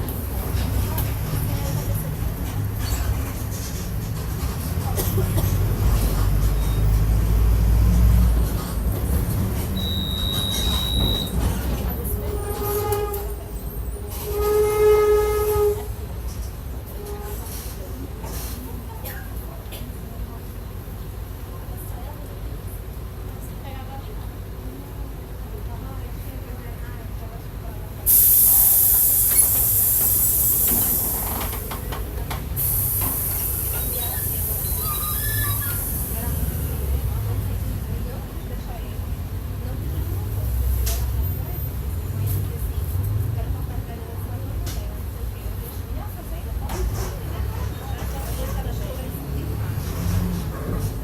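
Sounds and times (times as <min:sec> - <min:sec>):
diesel bus engine running: 0:00.0 - 0:12.6
compressed air hissing: 0:28.1 - 0:31.3.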